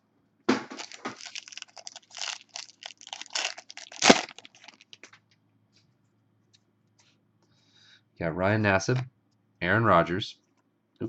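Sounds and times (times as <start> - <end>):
card pack wrapper crinkling: 0.7 - 5.1
sharp crack of wrapper: 0.7 - 5.1.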